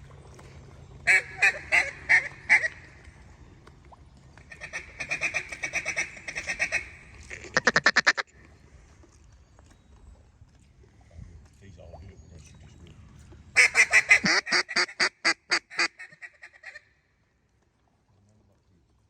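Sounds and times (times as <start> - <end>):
duck quacking: 1.1 - 2.8, 4.5 - 8.2, 13.6 - 16.8.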